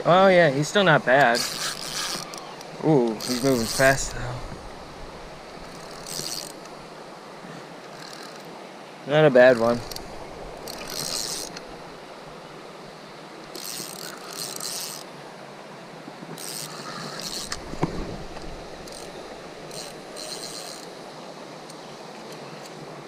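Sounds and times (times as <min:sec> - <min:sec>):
fishing reel buzzing: 0:01.3 - 0:07.0, 0:07.9 - 0:08.5, 0:09.5 - 0:12.4, 0:13.4 - 0:15.1, 0:16.4 - 0:21.0.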